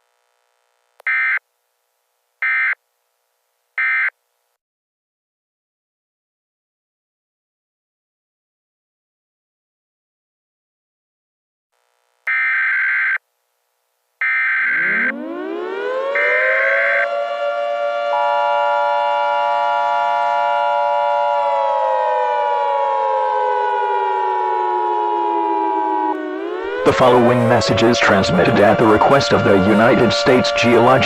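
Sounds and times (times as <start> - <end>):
two-tone attention signal: 12.3 - 13.2
civil defense siren winding: 14.2 - 31.0.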